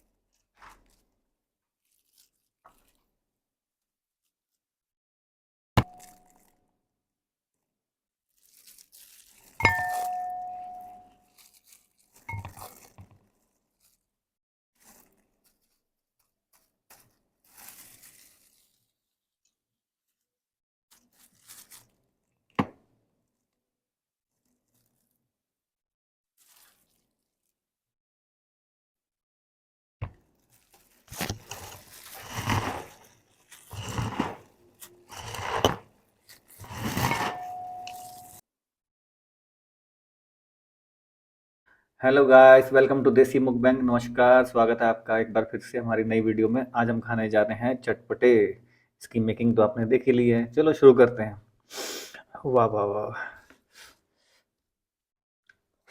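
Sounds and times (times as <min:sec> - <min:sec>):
crunchy rustling and scraping: 0:08.3 - 0:10.1, 0:11.1 - 0:14.1, 0:14.8 - 0:19.0, 0:20.9 - 0:22.0, 0:26.4 - 0:27.5, 0:30.2 - 0:38.4
utensil clinking against a dish: 0:09.6 - 0:11.1
rustling scraping strokes: 0:30.6 - 0:38.4.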